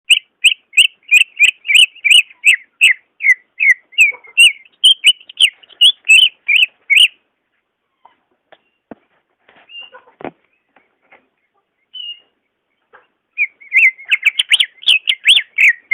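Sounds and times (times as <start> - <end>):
bird singing sharp whistled notes: 0.1 - 7.2, 11.9 - 12.2, 13.4 - 15.9.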